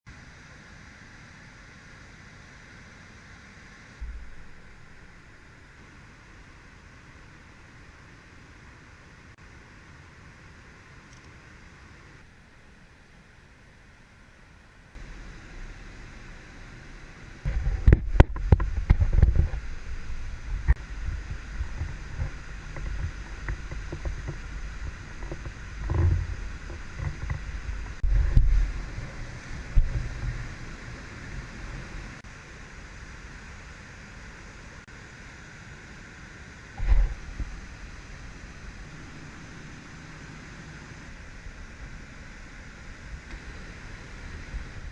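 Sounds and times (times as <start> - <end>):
river rushing: 0.1 - 14.0, 15.0 - 44.9
wind buffeting microphone: 17.4 - 32.3, 36.8 - 44.9.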